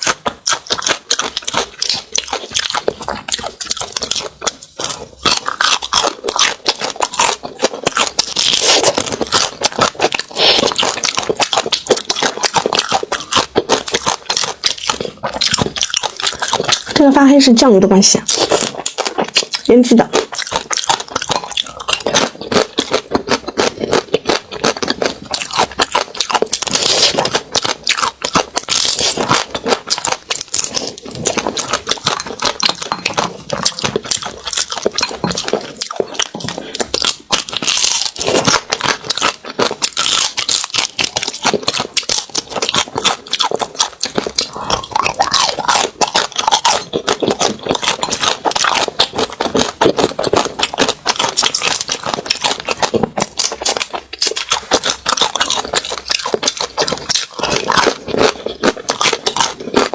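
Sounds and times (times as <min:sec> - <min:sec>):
crunching and chewing crab: 0:00.0 - 0:59.9.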